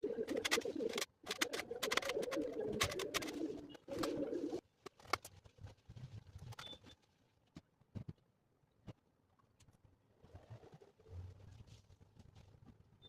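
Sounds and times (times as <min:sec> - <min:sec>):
bird cooing: 0:01.9 - 0:04.6.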